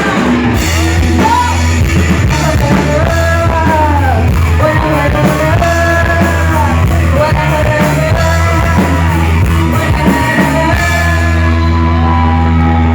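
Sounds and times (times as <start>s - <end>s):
bass: 0.0s - 12.9s
drums: 0.0s - 12.9s
person singing: 0.0s - 12.9s.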